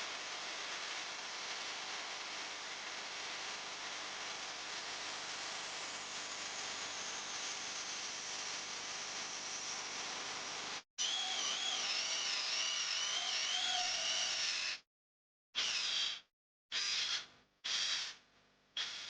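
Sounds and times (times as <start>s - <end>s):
cordless drill motor whining: 11.0s - 14.8s.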